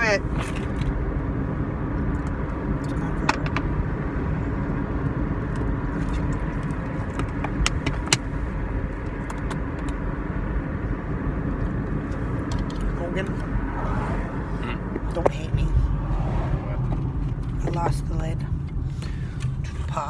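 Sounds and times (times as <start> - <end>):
road and engine rumble in car: 0.0 - 20.0
sharp clicks and taps: 7.2 - 8.3.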